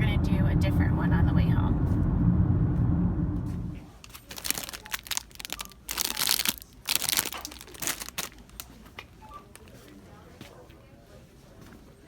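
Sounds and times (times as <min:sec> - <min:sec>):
crinkly material rustling: 0:03.9 - 0:10.0.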